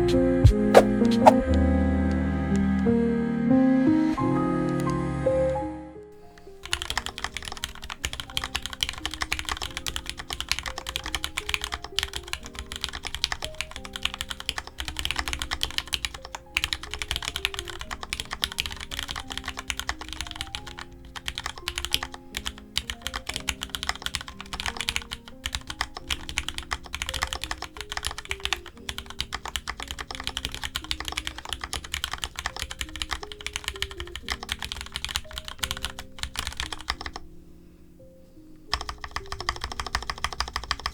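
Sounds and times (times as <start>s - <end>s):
soft background music: 0.0s - 40.9s
fast typing on mechanical keyboard: 6.3s - 37.2s, 38.7s - 40.9s.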